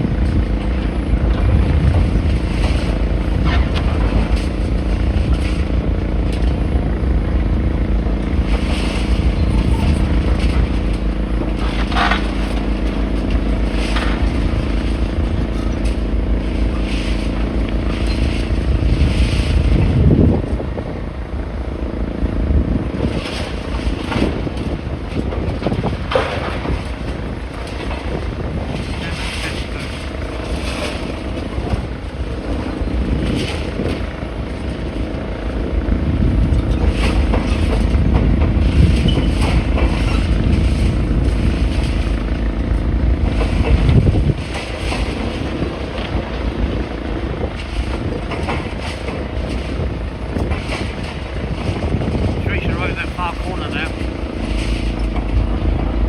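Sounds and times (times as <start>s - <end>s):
engine running steadily: 0.0s - 56.0s.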